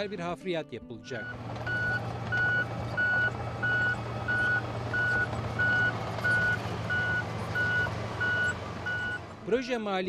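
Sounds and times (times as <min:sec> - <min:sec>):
reversing alarm beeping: 0:01.2 - 0:09.2
low engine hum: 0:01.2 - 0:09.6.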